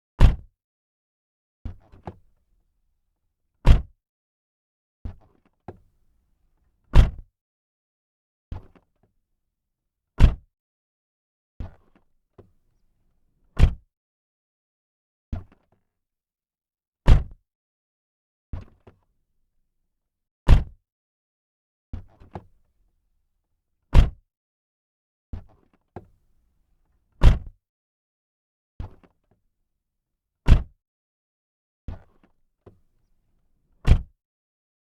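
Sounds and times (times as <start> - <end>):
car door shutting thud: 7.0 - 7.2, 27.2 - 27.5, 33.9 - 34.1.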